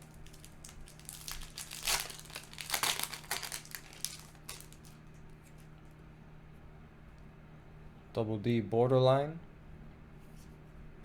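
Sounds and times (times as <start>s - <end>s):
foil wrapper crinkling: 0.0s - 5.7s.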